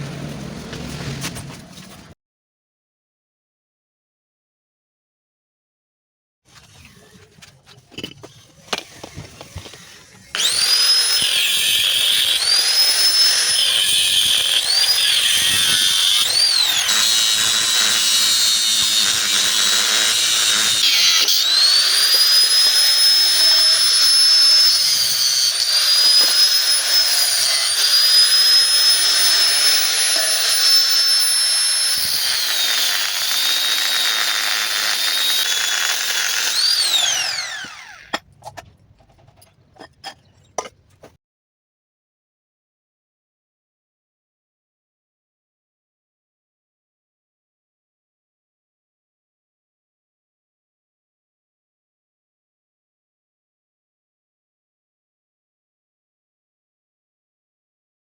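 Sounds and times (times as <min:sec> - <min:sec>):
power tool motor whining: 0:08.8 - 0:38.2.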